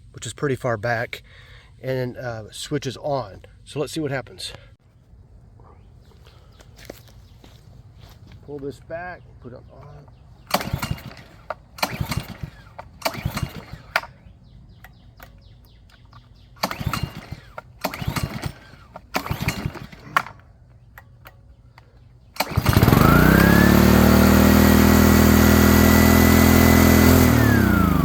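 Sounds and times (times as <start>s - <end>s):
small engine revving and running: 10.5s - 14.1s, 16.6s - 20.3s, 22.4s - 28.0s
recoil cord pulls: 10.5s - 14.2s, 14.8s - 28.0s.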